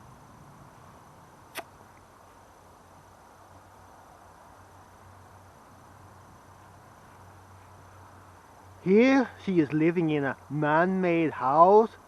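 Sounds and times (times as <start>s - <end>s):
background hiss: 0.0s - 12.0s
sharp click: 1.5s - 1.7s.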